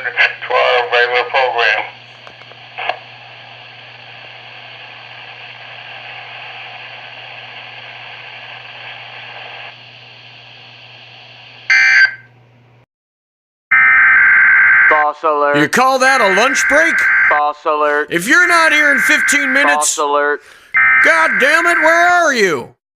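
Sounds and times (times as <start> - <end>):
radio static hiss: 0.0 - 11.7, 15.6 - 17.1, 17.9 - 20.0
low hum: 1.8 - 12.8.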